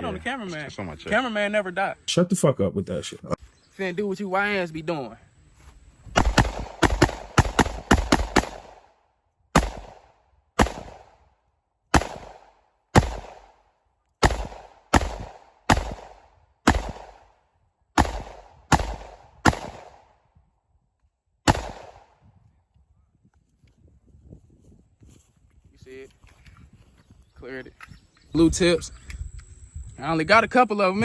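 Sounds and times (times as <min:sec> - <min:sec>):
gunshots with echo: 0:06.2 - 0:08.9, 0:09.6 - 0:11.2, 0:11.9 - 0:13.6, 0:14.2 - 0:17.3, 0:18.0 - 0:20.1, 0:21.5 - 0:22.2.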